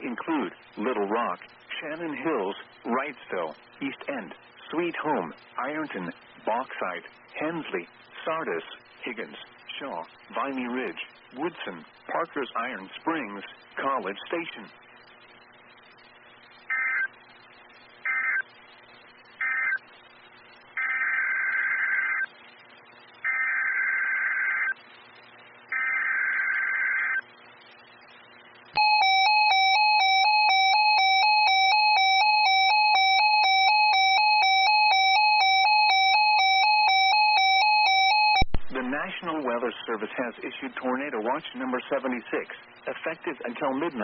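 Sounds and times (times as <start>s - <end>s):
low hiss and hum: 0.0s - 44.0s
digital data bursts: 18.0s - 18.5s.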